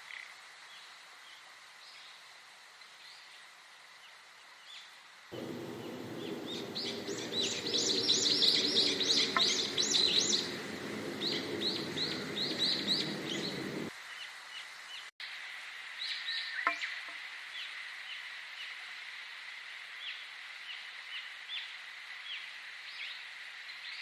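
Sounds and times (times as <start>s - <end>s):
songbird chirping: 4.7s - 14.7s
steady low rumble: 5.4s - 13.9s.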